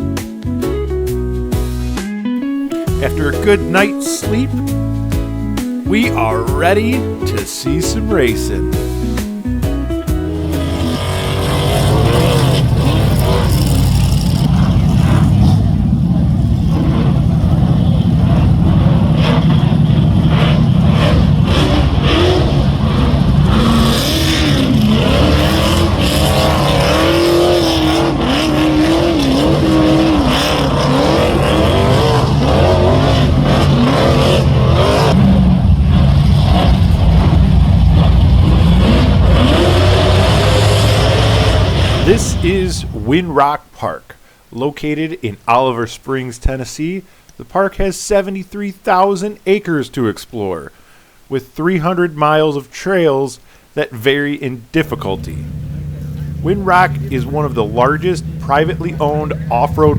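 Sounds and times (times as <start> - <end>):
buggy engines revving hard: 2.4 - 43.4, 54.7 - 59.9.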